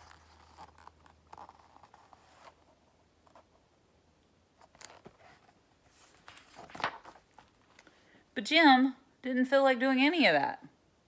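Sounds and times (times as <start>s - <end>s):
paper rustles: 4.6s - 8.0s.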